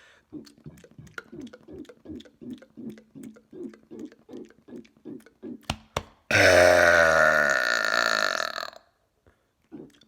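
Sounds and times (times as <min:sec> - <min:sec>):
man burping: 0:06.3 - 0:08.9.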